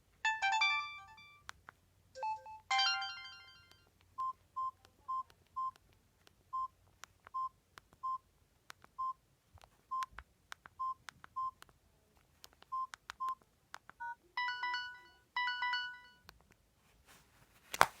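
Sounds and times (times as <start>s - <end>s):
phone chimes: 0.3s - 1.4s, 2.2s - 3.8s, 14.4s - 16.2s
phone key clicks with beeps: 12.6s - 13.4s.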